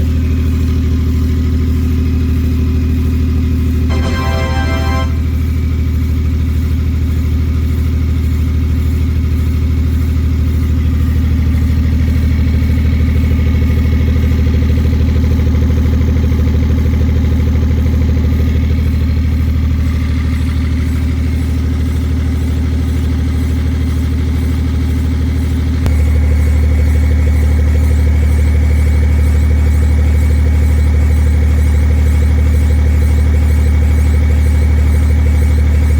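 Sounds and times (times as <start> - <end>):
car engine drone: 25.8 - 35.9.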